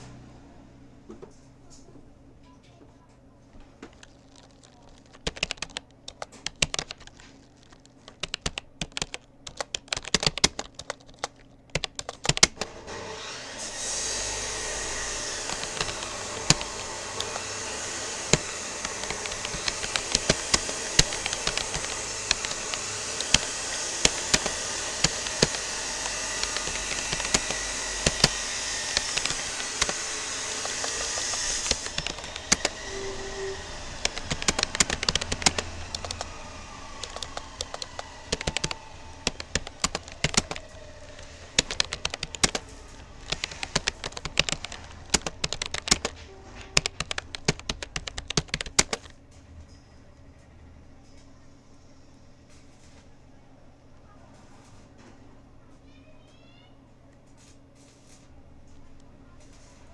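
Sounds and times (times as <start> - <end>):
keyboard keys clicking: 3.6 - 13.0, 13.8 - 49.2
steady rushing blower noise: 12.6 - 49.0.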